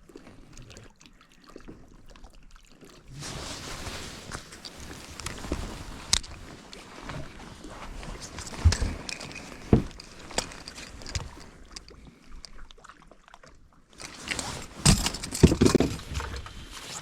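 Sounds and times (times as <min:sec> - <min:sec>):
water sloshing: 0:00.0 - 0:17.0
knocks and thumps on boat: 0:07.1 - 0:11.5, 0:14.1 - 0:17.0.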